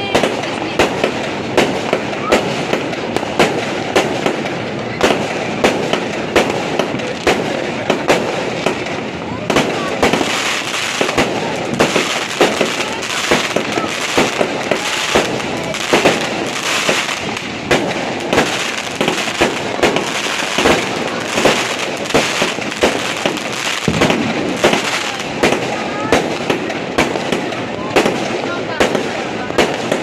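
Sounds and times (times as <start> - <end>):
firecracker bangs: 0.0 - 30.0
fireworks crackling: 0.0 - 30.0.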